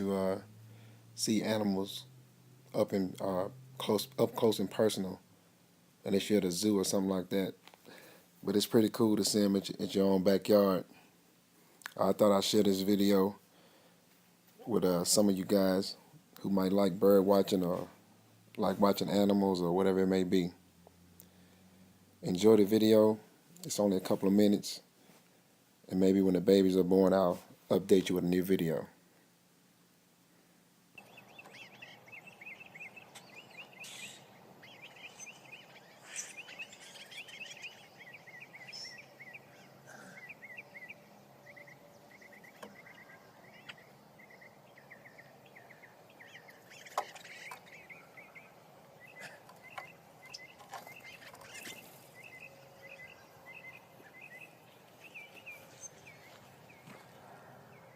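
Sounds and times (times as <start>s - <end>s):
songbirds trilling: 30.9s - 57.9s.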